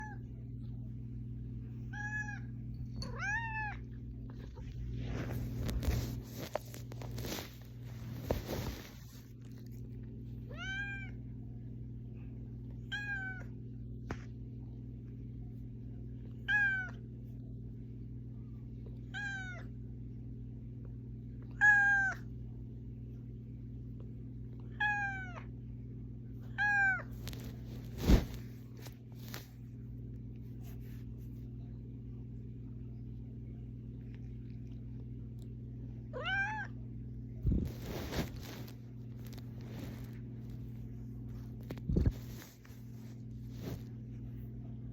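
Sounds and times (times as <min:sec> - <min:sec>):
steady low hum: 0:00.0 - 0:44.9
cat meowing: 0:01.9 - 0:03.9, 0:10.5 - 0:11.2, 0:12.9 - 0:13.5, 0:16.5 - 0:17.0, 0:21.6 - 0:22.2, 0:24.7 - 0:25.4, 0:36.2 - 0:36.7.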